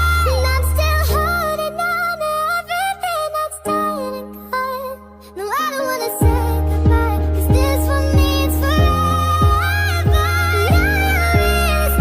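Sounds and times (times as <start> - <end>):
bass and chord accompaniment: 0.0 - 2.4, 6.1 - 12.0.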